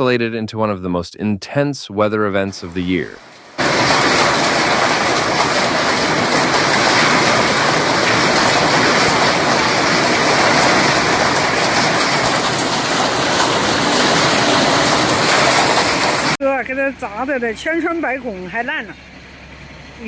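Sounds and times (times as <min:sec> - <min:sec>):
hail and rain pelting: 0:03.2 - 0:16.4.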